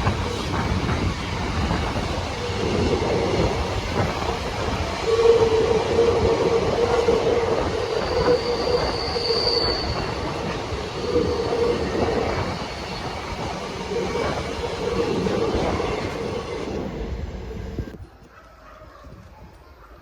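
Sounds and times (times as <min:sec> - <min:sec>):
wheels squealing: 0:00.0 - 0:17.9
train wheels rumbling on rail: 0:00.0 - 0:18.0.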